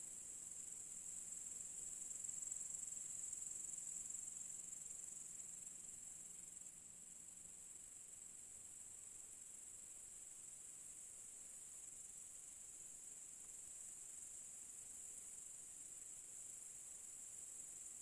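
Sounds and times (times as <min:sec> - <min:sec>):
crickets trilling: 0:00.0 - 0:18.0.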